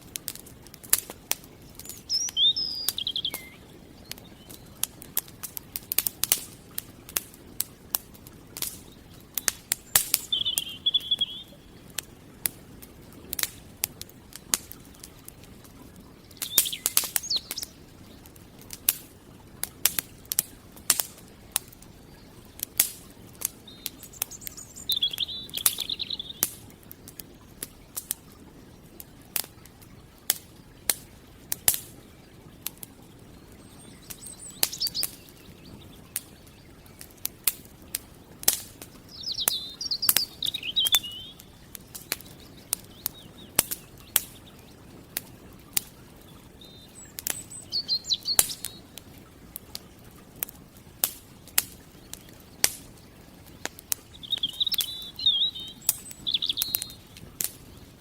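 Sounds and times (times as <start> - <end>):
campfire crackling: 0.0 - 58.0
bird warbling: 1.7 - 3.6, 9.9 - 11.6, 16.4 - 17.8, 23.7 - 26.5, 34.1 - 35.4, 39.1 - 41.5, 46.6 - 48.8, 54.1 - 57.0.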